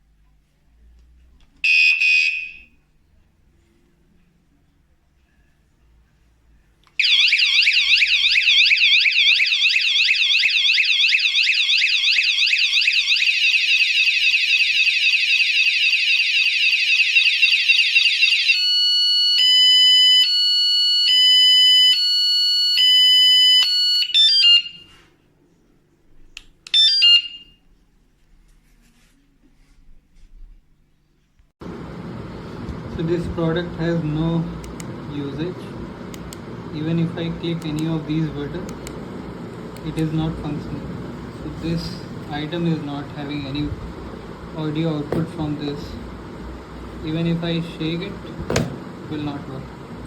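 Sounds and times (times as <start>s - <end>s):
electronic bike alarm siren: 1.6s - 2.7s, 7.0s - 25.0s, 26.7s - 27.6s.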